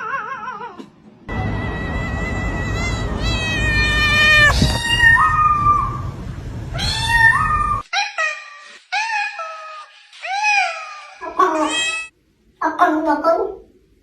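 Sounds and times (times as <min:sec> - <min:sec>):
cat meowing: 0:00.0 - 0:06.0, 0:06.7 - 0:07.9, 0:09.0 - 0:12.1
low rumble: 0:01.3 - 0:07.8.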